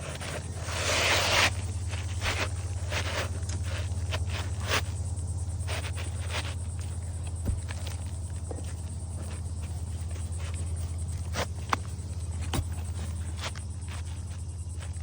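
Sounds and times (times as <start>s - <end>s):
roof shingle scraping: 0.0s - 15.0s
steady low hum: 0.0s - 15.0s.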